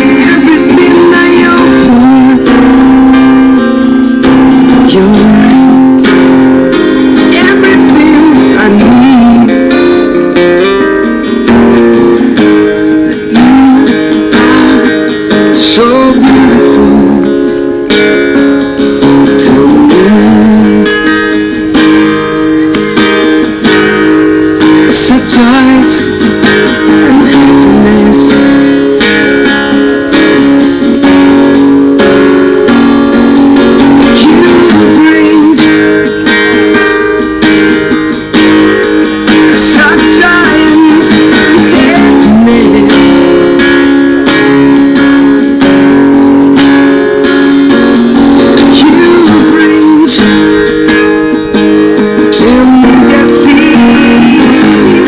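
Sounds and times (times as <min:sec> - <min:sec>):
man singing: 0:00.0 - 0:10.4, 0:13.1 - 0:17.6, 0:18.9 - 0:21.6, 0:24.7 - 0:29.0, 0:33.6 - 0:36.1, 0:39.4 - 0:43.6, 0:48.4 - 0:50.9, 0:52.0 - 0:55.0
acoustic guitar strumming: 0:00.0 - 0:55.0.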